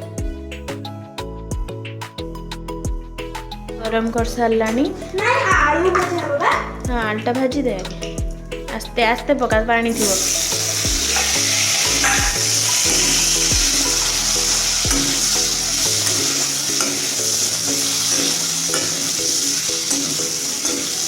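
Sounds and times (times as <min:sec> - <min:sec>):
background music: 0:00.0 - 0:21.0
potatoes sizzling in hot oil: 0:10.0 - 0:21.0.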